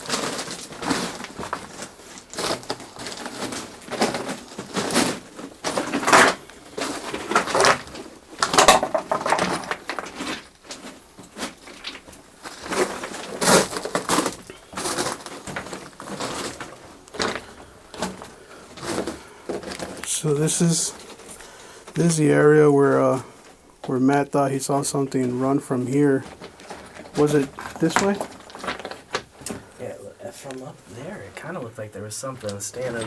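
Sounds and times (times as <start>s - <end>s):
footsteps crunching on gravel: 9.6s - 30.7s.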